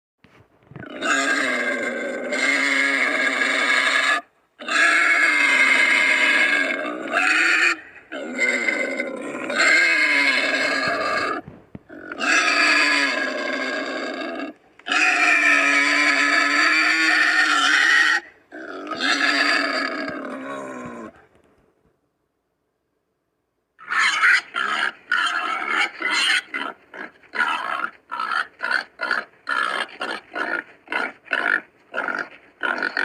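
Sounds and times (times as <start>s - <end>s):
loud creature calls: 0.8s - 21.2s, 23.8s - 33.0s.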